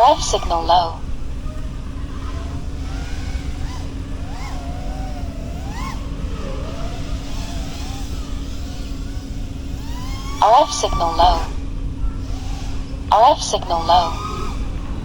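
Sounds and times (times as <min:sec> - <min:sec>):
drone motors whining: 0:00.0 - 0:15.0
steady low rumble: 0:00.0 - 0:15.0.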